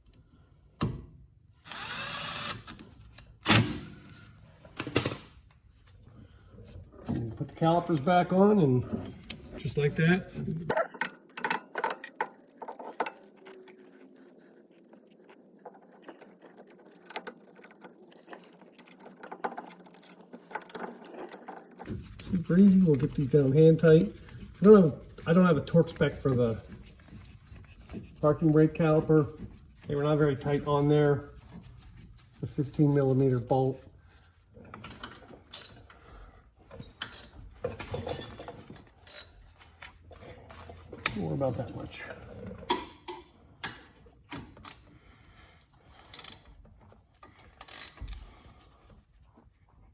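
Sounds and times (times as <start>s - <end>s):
metal tools and bolts clinking: 9.0s - 13.8s, 36.7s - 41.9s.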